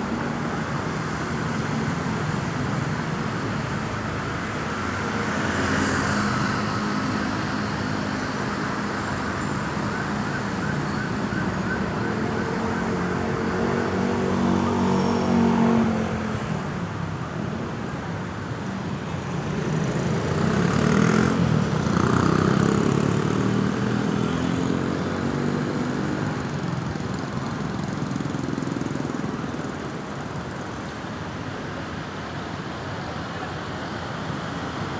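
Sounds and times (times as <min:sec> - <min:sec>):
vehicles passing close by: 0:00.0 - 0:34.9
faint siren wailing: 0:08.8 - 0:15.8.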